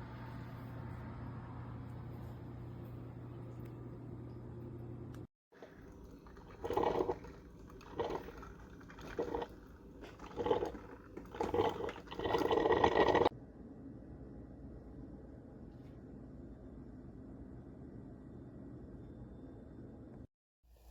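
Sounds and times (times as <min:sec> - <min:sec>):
coffee maker gurgling and sputtering: 0:05.5 - 0:13.3.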